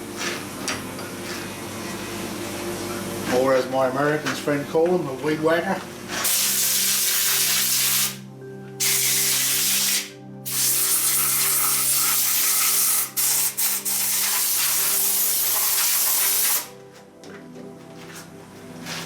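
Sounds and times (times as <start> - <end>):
spray nozzle hissing: 8.8 - 16.7.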